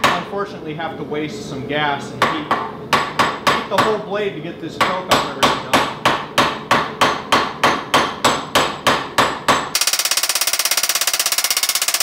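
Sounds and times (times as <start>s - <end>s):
fast rattle of hammer strikes: 4.8s - 12.0s.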